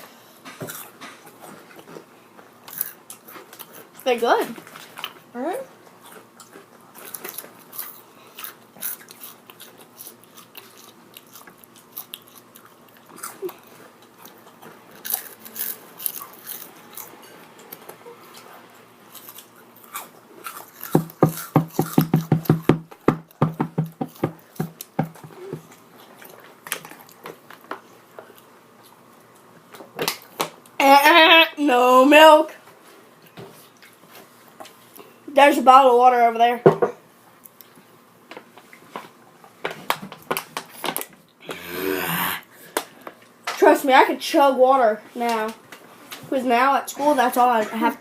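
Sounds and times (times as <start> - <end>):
crunchy snack being chewed: 0.7 - 4.0, 4.7 - 22.3.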